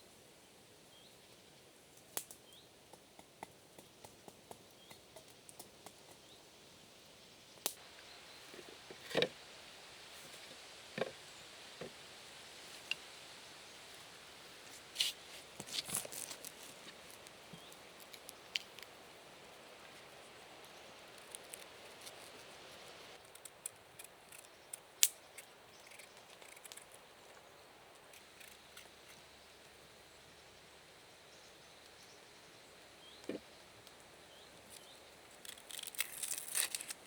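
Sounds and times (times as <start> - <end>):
faint steady hiss: 0.0 - 37.0
small sharp clicks and snaps: 2.2 - 2.4.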